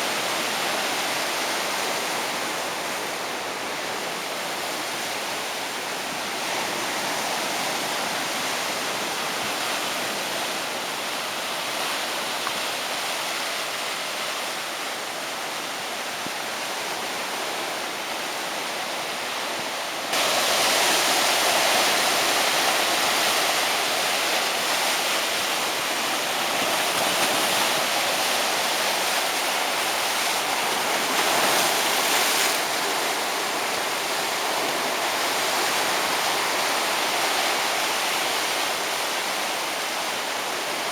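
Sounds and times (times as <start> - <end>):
waves breaking on beach: 0.0 - 40.9.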